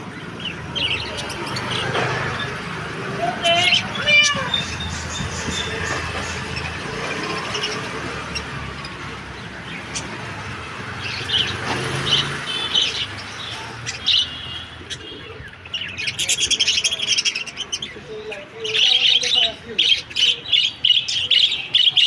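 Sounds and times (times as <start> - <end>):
parrots chirping: 0.0 - 10.4, 11.0 - 22.0.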